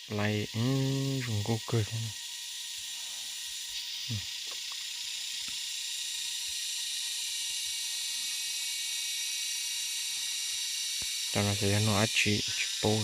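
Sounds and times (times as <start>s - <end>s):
forest insects chorus: 0.0s - 13.0s.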